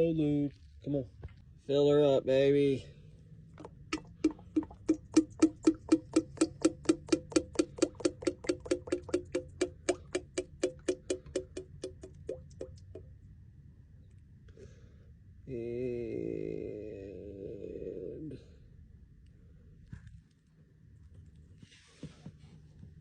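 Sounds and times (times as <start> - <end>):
oil glugging out of a jug: 3.6 - 12.9.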